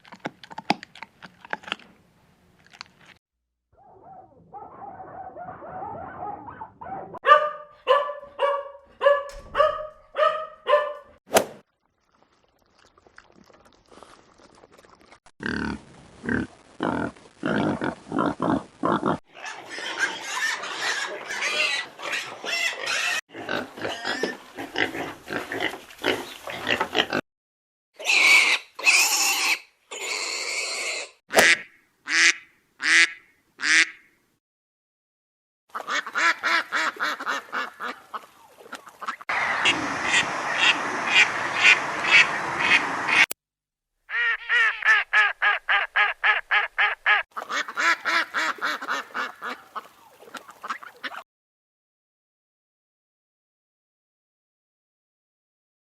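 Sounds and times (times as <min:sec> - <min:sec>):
ducks quacking: 0:35.7 - 0:43.3, 0:44.1 - 0:51.2.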